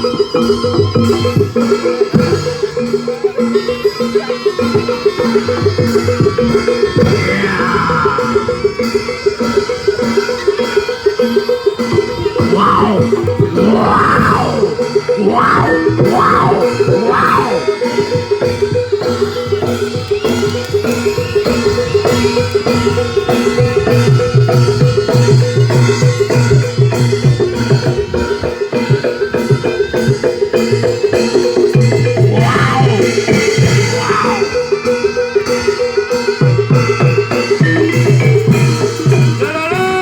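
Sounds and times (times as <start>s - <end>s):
gong-chime metallophones: 0.0s - 40.0s
hand drums: 0.0s - 40.0s
rising and falling pitch glides: 12.5s - 17.8s.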